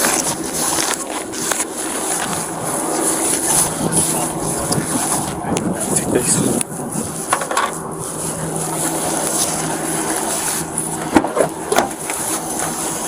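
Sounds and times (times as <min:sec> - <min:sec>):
clothing rustling on microphone: 0:00.0 - 0:13.0
steady low hum: 0:00.0 - 0:13.0.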